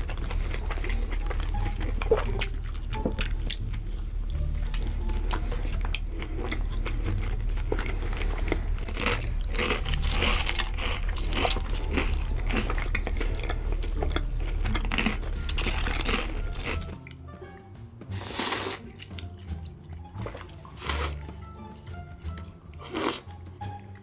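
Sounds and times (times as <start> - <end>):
chewing crunchy food: 0.0 - 17.2, 18.2 - 24.0
steady low hum: 0.0 - 18.0
wet mouth sounds: 18.1 - 21.3, 22.8 - 23.4.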